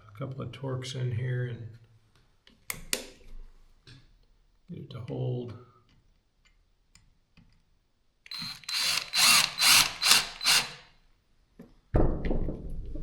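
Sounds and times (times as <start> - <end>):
power driver driving screws: 8.3 - 10.9.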